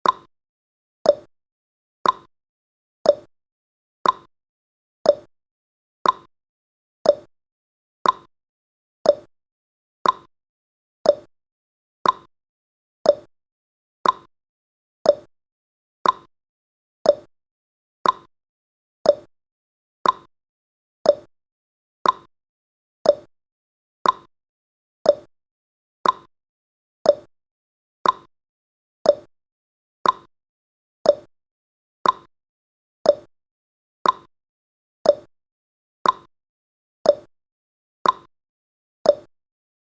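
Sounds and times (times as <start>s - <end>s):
timer ticking: 0.0s - 0.3s, 1.0s - 1.3s, 2.0s - 2.3s, 3.0s - 3.3s, 4.0s - 4.3s, 5.1s - 5.3s, 6.0s - 6.3s, 7.0s - 7.3s, 8.0s - 8.3s, 9.0s - 9.3s, 10.0s - 10.3s, 11.0s - 11.3s, 12.0s - 12.3s, 13.0s - 13.3s, 14.0s - 14.3s, 15.0s - 15.3s, 16.0s - 16.3s, 17.0s - 17.3s, 18.0s - 18.3s, 19.0s - 19.3s, 20.0s - 20.3s, 21.0s - 21.3s, 22.0s - 22.3s, 23.0s - 23.3s, 24.0s - 24.3s, 25.0s - 25.3s, 26.0s - 26.3s, 27.0s - 27.3s, 28.0s - 28.3s, 29.0s - 29.3s, 30.0s - 30.3s, 31.0s - 31.3s, 32.0s - 32.3s, 33.0s - 33.3s, 34.0s - 34.3s, 35.0s - 35.3s, 36.0s - 36.3s, 37.0s - 37.3s, 38.0s - 38.3s, 39.1s - 39.3s.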